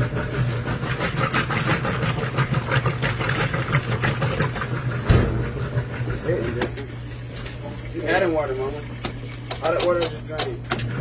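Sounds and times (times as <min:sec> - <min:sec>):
washing machine spinning: 0:00.0 - 0:11.0.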